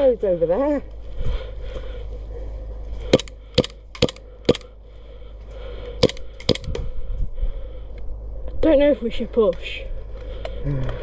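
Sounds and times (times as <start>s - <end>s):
airsoft gun shots cracking: 3.1s - 4.7s, 6.0s - 6.7s.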